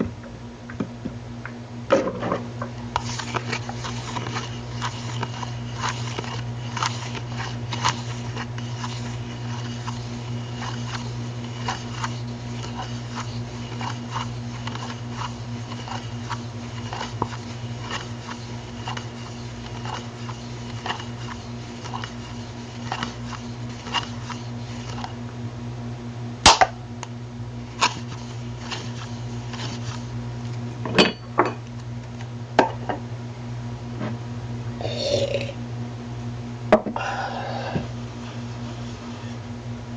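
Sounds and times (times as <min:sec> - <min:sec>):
low electrical hum: 0:00.0 - 0:39.9
objects being handled clicking: 0:03.0 - 0:25.2.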